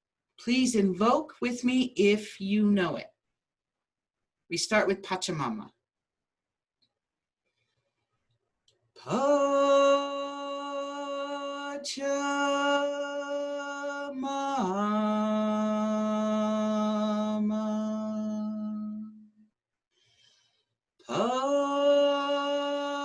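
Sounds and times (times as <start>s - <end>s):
woman chanting long notes: 21.1s - 23.0s.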